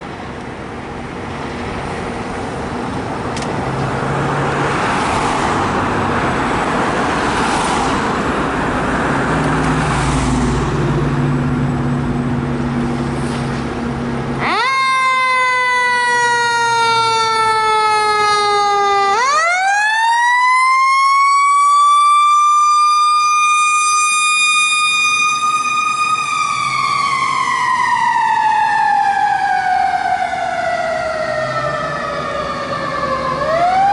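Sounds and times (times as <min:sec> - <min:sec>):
fire truck engine rumble: 0:00.0 - 0:33.9
road noise: 0:00.0 - 0:33.9
fire engine siren wailing: 0:13.9 - 0:33.9.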